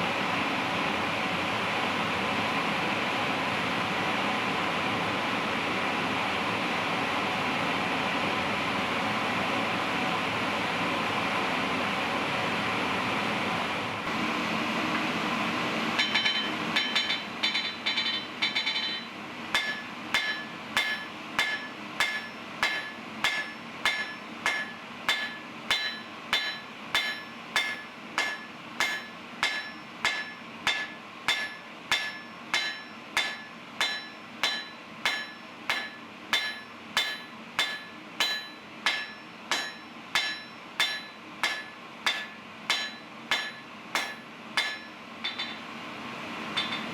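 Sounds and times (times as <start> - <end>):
hammer clanging on steel: 16.0 - 45.7, 46.6 - 46.9.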